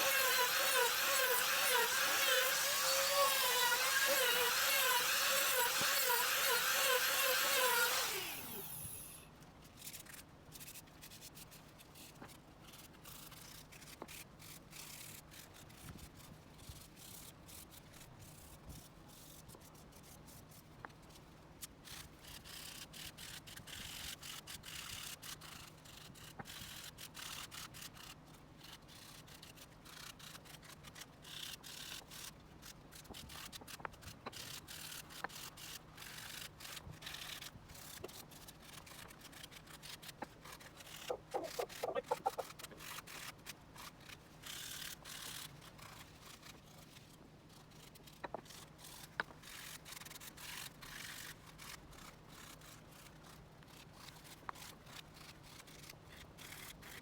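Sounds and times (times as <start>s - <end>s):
small power tool whining: 0.0s - 9.2s
hand rubbing on wood: 41.0s - 42.6s.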